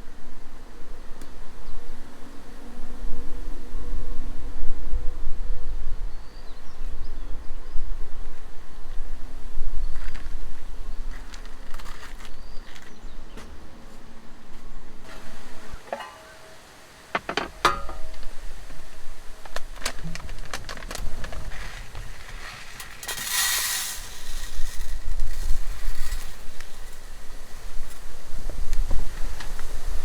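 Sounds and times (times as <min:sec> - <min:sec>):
brief hiss: 0:22.7 - 0:27.1.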